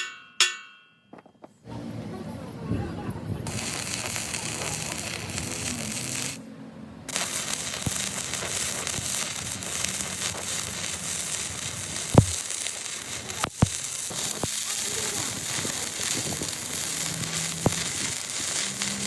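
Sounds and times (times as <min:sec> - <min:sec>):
sharp metal knock: 0:00.0 - 0:01.2
arc welding crackling hiss: 0:03.5 - 0:06.4, 0:07.1 - 0:19.0.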